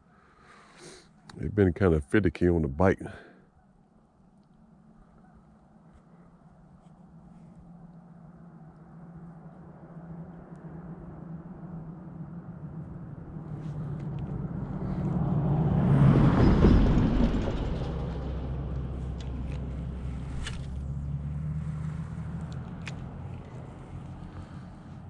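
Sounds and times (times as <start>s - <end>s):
vehicle passing: 12.6s - 25.0s.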